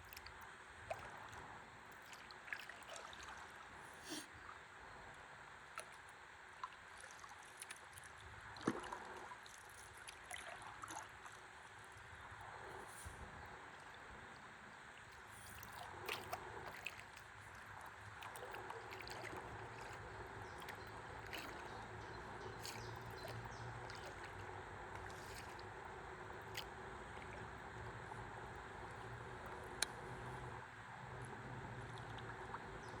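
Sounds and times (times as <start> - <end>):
small ticks and splashes: 0.0 - 3.9, 5.6 - 12.1, 14.9 - 30.4
water lapping against paddleboard: 15.0 - 30.6.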